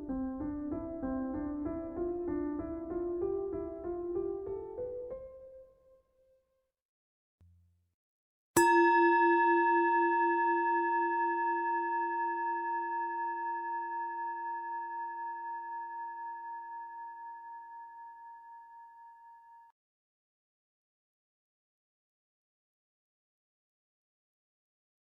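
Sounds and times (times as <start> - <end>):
singing bowl ringing: 8.6 - 19.7.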